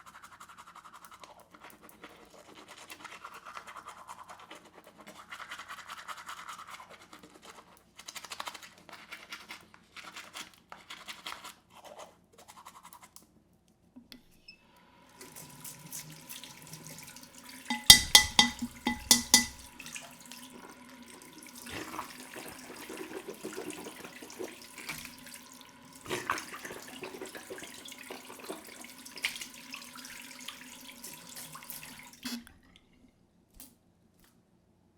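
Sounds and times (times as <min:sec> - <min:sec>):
toothbrush scrubbing teeth: 0:00.0 - 0:13.3, 0:17.7 - 0:19.6.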